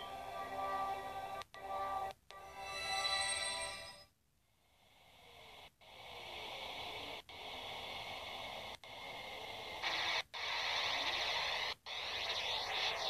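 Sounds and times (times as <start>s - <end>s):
sweeping whistling tones: 2.6s - 4.1s
radio hiss: 5.0s - 13.0s.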